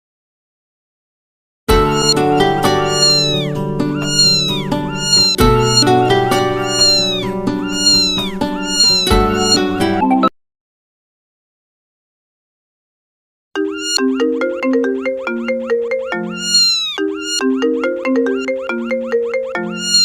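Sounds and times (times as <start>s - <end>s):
backing chords: 1.7s - 10.2s
kitten meows ringtone melody: 1.7s - 10.2s, 13.6s - 20.0s.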